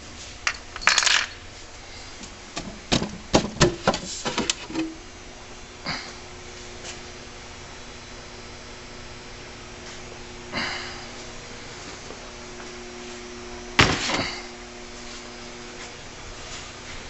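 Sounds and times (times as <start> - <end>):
low hum: 4.6 - 17.0.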